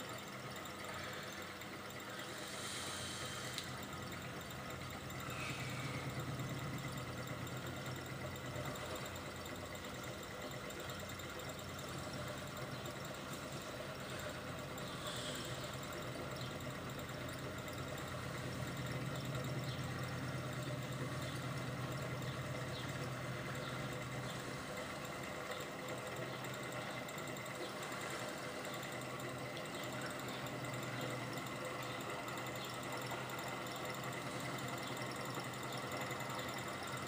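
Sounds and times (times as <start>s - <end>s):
stirling engine mechanical hum: 0.0s - 37.0s.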